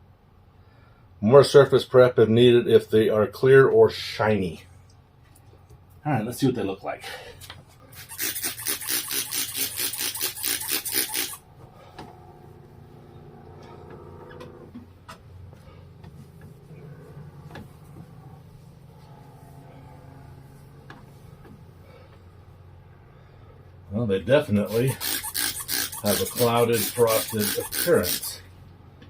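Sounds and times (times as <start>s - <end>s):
cloth rubbing on plastic: 8.0s - 11.4s, 24.6s - 28.4s.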